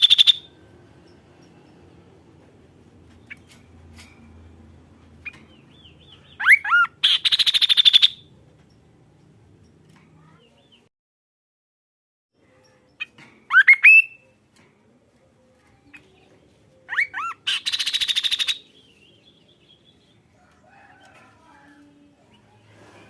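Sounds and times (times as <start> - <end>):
bird whistling: 0.0 - 0.5, 6.4 - 8.2, 13.5 - 14.2, 16.9 - 18.7.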